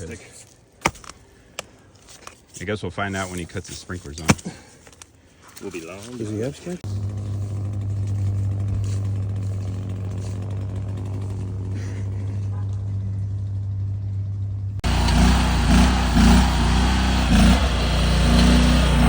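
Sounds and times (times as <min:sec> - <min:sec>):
engine revving under load: 0:06.8 - 0:12.5, 0:14.8 - 0:19.0
engine humming: 0:06.8 - 0:19.0.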